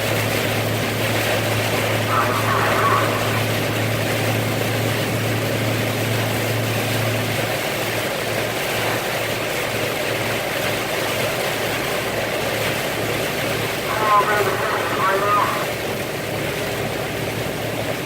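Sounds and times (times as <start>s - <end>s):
rain and tyres hissing: 0.0s - 7.2s
car engine hum: 0.0s - 8.0s, 12.6s - 15.8s.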